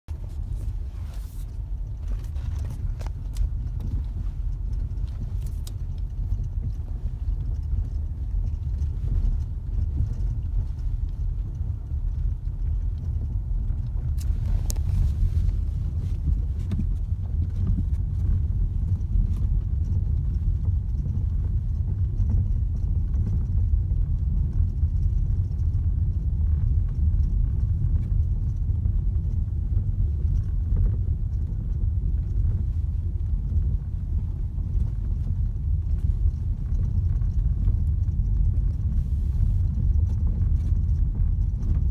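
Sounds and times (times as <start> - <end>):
low road rumble: 0.0 - 41.9.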